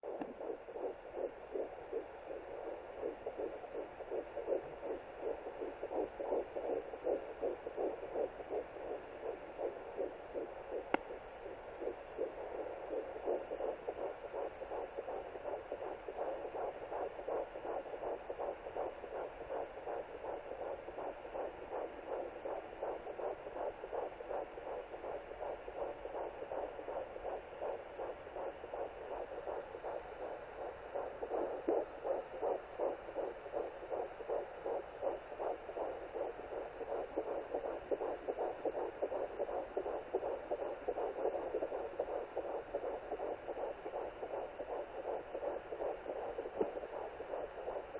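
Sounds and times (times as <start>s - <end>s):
fetal heartbeat on doppler: 0.0s - 47.9s
click: 0.2s - 0.4s, 10.9s - 11.1s.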